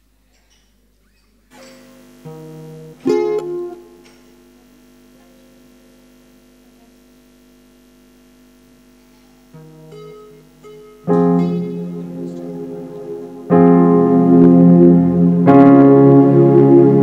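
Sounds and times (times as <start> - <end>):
faint mains hum: 0.0 - 17.0
instrumental chords ringing: 1.9 - 4.2, 9.6 - 17.0.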